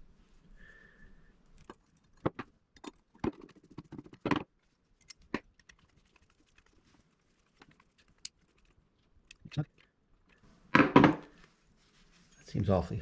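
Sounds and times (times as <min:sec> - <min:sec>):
small metal parts clicking: 0:07.4 - 0:10.4.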